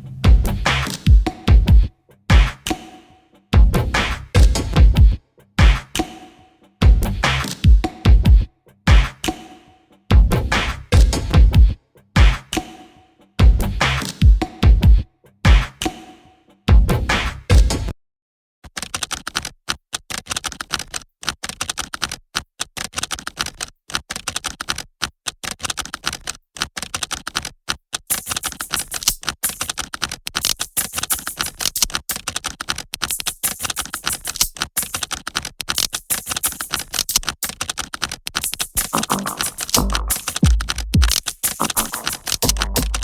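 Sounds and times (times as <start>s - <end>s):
electronic bass and beat: 0.0s - 17.9s, 38.7s - 43.0s
glitchy electronic clicking: 38.3s - 43.0s.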